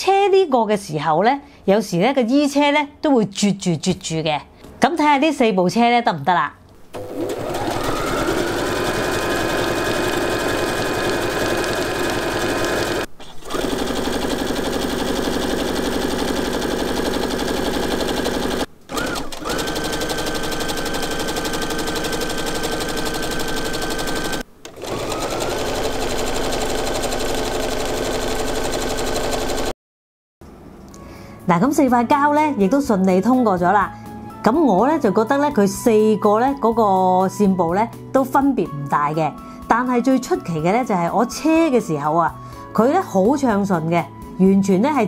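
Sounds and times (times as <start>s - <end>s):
sewing machine stitching: 6.9s - 29.7s.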